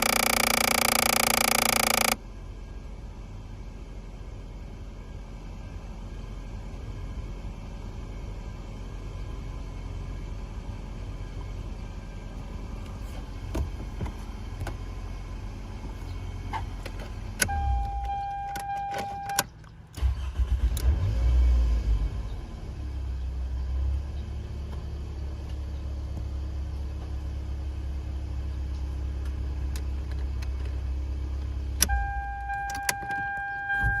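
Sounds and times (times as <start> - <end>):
steady high tone: 0.0 - 2.2
car engine idling: 0.0 - 20.6, 22.2 - 34.0.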